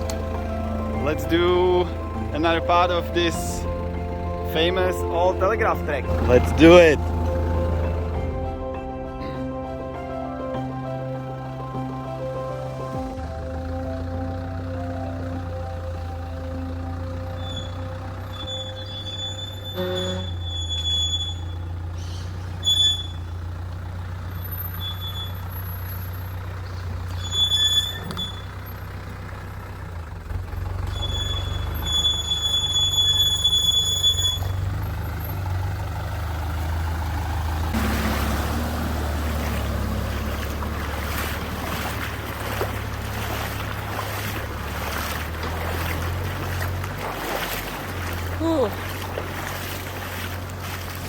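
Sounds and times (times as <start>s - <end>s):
diesel truck engine running: 0.0s - 51.0s
high squeaks from suspension: 16.9s - 29.8s, 30.5s - 35.6s
broad rushing noise: 37.8s - 51.0s.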